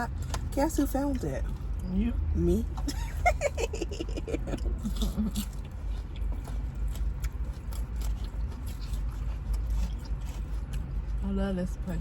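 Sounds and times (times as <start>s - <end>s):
steady low rumble: 0.0s - 12.0s
crunching while eating salad: 4.6s - 11.2s.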